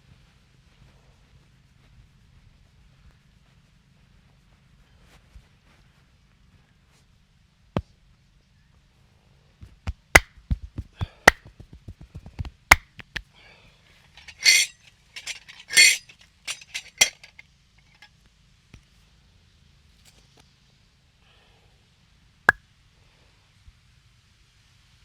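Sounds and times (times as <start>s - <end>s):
hands slapping and clicking: 9.7s - 13.2s.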